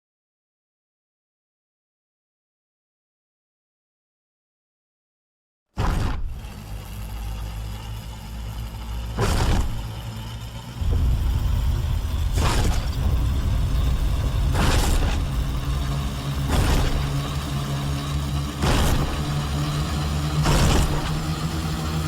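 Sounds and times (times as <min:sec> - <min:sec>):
deep steady rumble: 0:06.2 - 0:22.0
loud hissing crash: 0:10.8 - 0:19.4.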